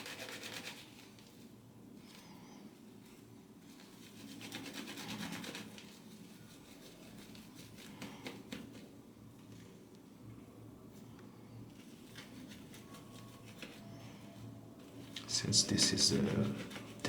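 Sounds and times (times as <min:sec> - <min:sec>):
shaving brush lathering soap: 0:00.0 - 0:01.0, 0:03.7 - 0:08.9, 0:11.8 - 0:17.0.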